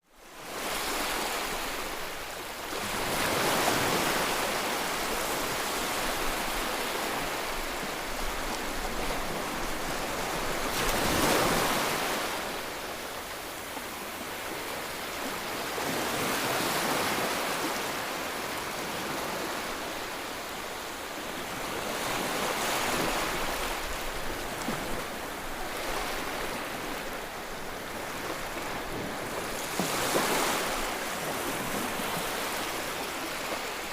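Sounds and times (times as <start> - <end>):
sea waves breaking on beach: 0.3 - 33.9.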